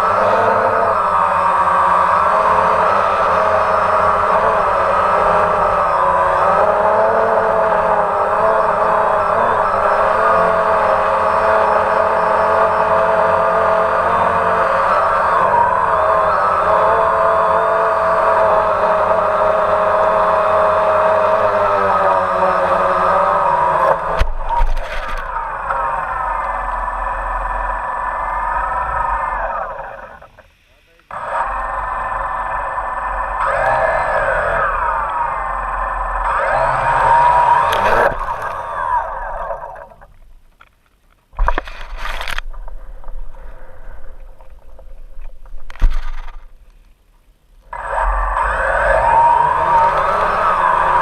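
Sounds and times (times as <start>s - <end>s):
drone propellers whining: 0.0s - 40.7s, 41.3s - 46.9s, 47.5s - 51.0s
brief clatter: 44.4s - 46.8s
sharp click: 45.2s - 46.8s.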